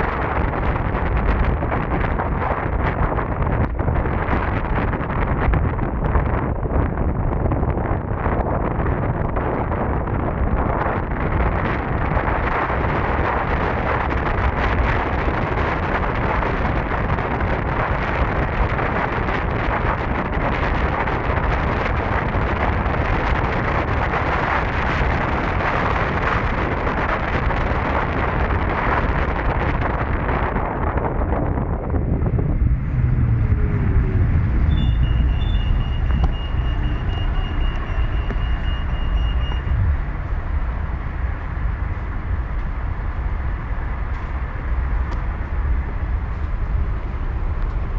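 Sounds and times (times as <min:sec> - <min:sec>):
low rumble: 0:00.0 - 0:47.9
wind buffeting microphone: 0:00.0 - 0:47.9
thin steady high tone: 0:33.5 - 0:39.8.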